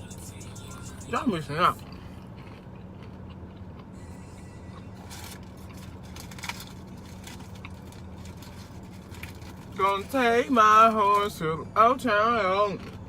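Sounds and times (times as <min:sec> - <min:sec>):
low hum: 0:00.0 - 0:13.0
faint packaging crinkles and clicks: 0:05.1 - 0:09.8.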